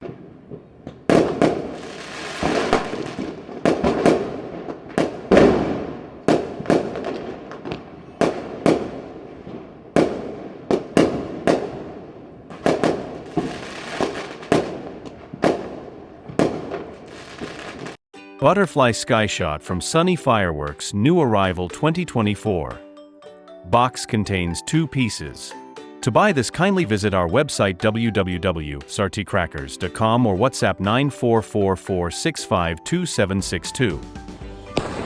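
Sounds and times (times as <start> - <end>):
firework cake bangs: 1.1 - 18.0, 34.8 - 35.0.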